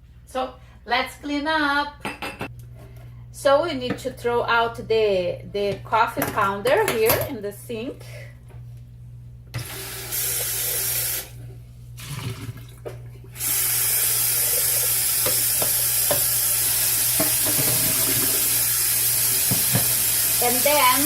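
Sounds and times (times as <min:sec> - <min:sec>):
tap running into sink: 0:15.1 - 0:16.4, 0:17.0 - 0:18.6, 0:19.2 - 0:20.4.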